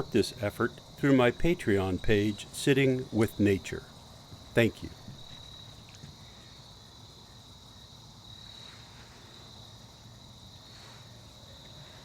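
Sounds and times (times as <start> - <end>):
insect chorus trilling: 0.0 - 12.0.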